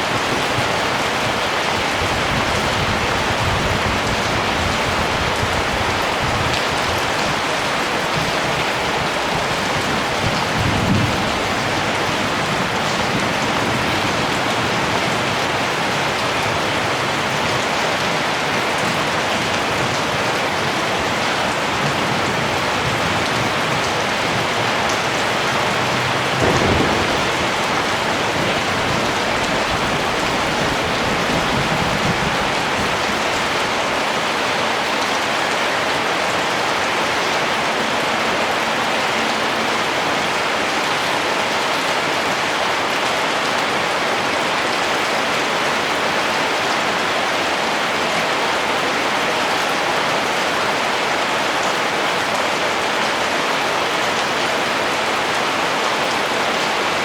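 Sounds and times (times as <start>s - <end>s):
steady rain falling: 0.0s - 57.0s
thunder rumbling: 22.0s - 33.8s.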